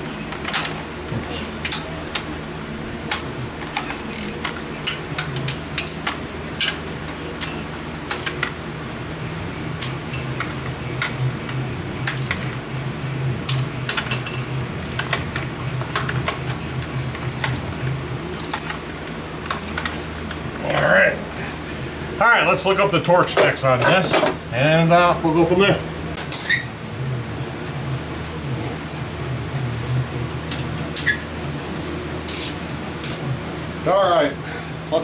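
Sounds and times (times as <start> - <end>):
steady low hum: 0.0 - 35.0
hand tools clicking on metal: 3.1 - 8.5, 12.1 - 12.6, 13.5 - 16.4, 17.2 - 17.7, 18.4 - 18.8, 19.5 - 20.0.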